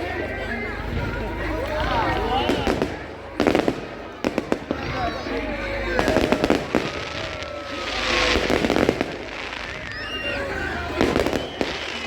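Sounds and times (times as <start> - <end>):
fireworks bangs and crackles: 0.3 - 12.0
hissing crackling firework burst: 2.4 - 12.0.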